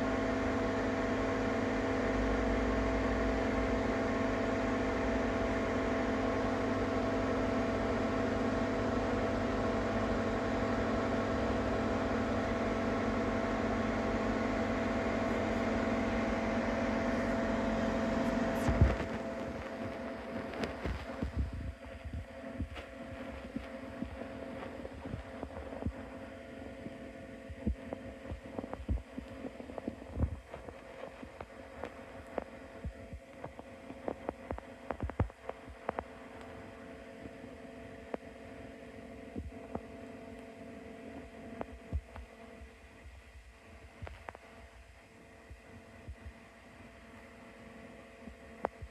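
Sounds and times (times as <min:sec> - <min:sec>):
multicooker humming and whirring: 0:00.0 - 0:48.9.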